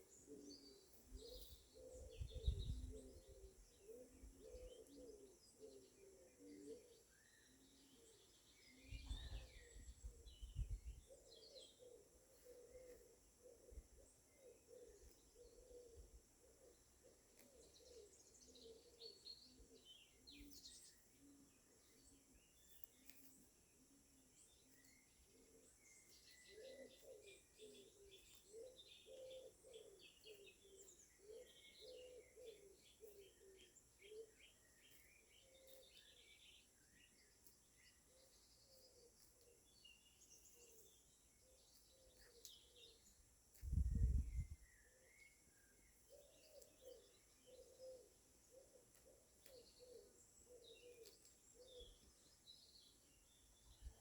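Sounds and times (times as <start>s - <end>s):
dove cooing: 0.0s - 7.0s, 8.8s - 20.5s, 25.3s - 34.5s, 46.1s - 52.0s
small birds chirping: 0.0s - 54.0s.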